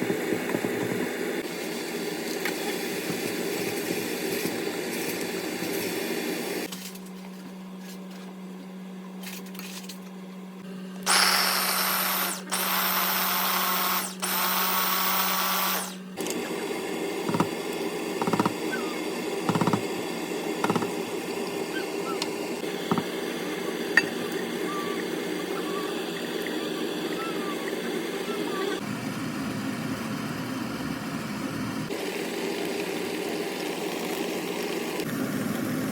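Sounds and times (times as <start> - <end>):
small electric motor humming: 11.0 - 16.6, 17.2 - 25.2.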